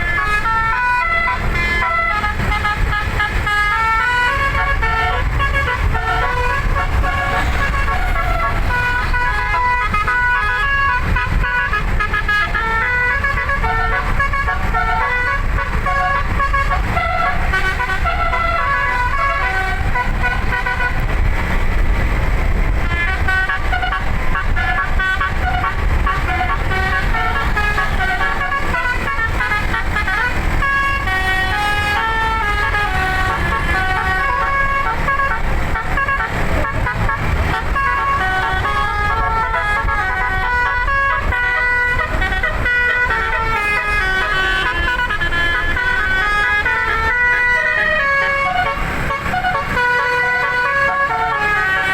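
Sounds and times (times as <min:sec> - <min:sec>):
musical air horn melody: 0:00.0 - 0:51.9.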